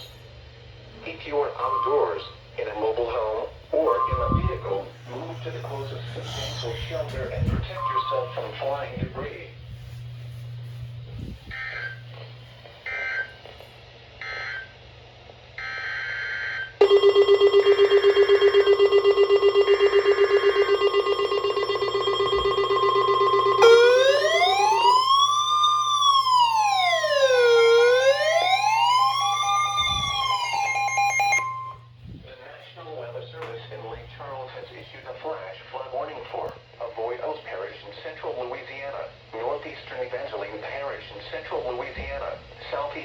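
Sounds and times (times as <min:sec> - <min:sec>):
rapidly pulsing alarm tone: 0:03.8 - 0:09.2, 0:15.6 - 0:32.0
electronic siren wailing: 0:15.6 - 0:32.0.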